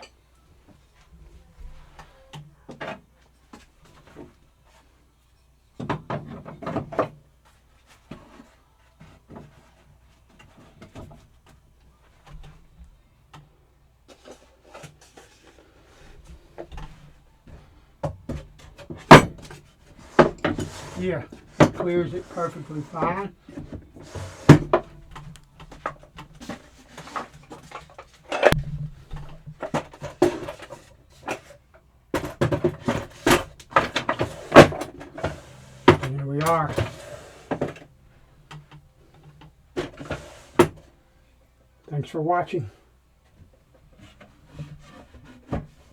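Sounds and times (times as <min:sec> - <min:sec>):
wooden knocks and clunks: 0:16.2 - 0:31.5
dull thump: 0:28.6 - 0:29.6.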